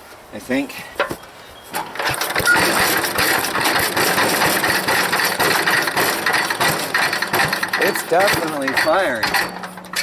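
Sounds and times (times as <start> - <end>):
small gasoline engine running: 2.0 - 9.9.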